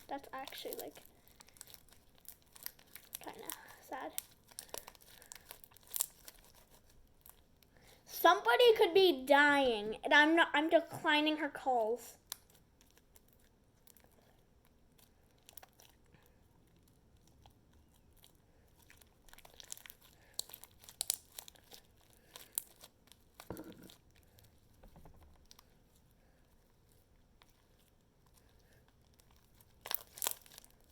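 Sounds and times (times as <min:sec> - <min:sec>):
slime squished by hand: 0:00.0 - 0:07.6, 0:26.9 - 0:30.9
sticky crackling and pops: 0:00.0 - 0:11.4, 0:12.2 - 0:30.9.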